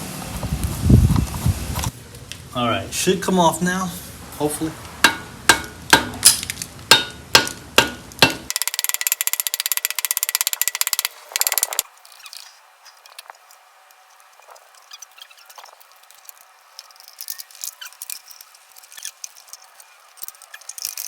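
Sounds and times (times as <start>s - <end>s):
fast even clicking: 5.0s - 11.8s
hammer striking metal: 5.0s - 11.8s.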